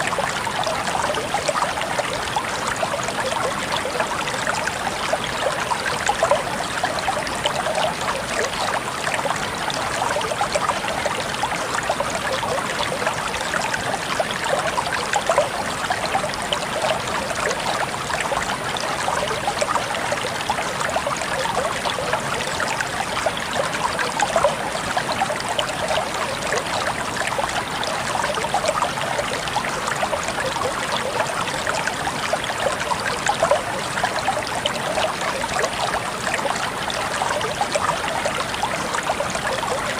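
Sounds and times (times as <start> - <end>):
stream water babbling over rocks: 0.0 - 39.9.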